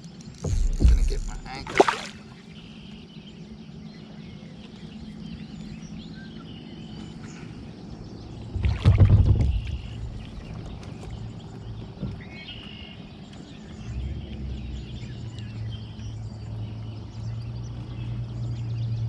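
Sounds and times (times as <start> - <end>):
bumping and rustling: 0.4 - 1.9, 8.5 - 12.4
kayak handling noise: 0.4 - 2.1, 8.6 - 12.2.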